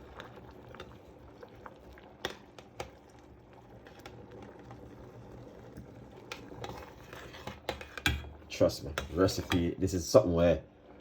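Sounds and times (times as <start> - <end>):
low steady background hum: 0.0 - 11.0
faint sharp clicks and taps: 2.2 - 3.0.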